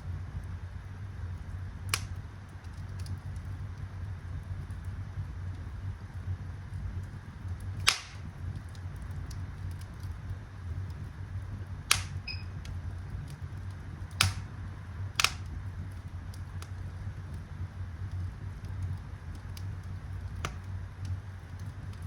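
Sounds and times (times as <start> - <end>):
wood fire burning: 0.0 - 22.0
sharp crackling pops of wood: 1.9 - 3.4, 7.0 - 10.2, 11.8 - 16.8, 18.1 - 22.0.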